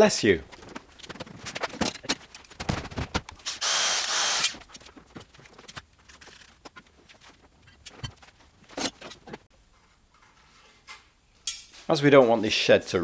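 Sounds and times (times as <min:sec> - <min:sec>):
power tool burst: 0:03.5 - 0:04.6.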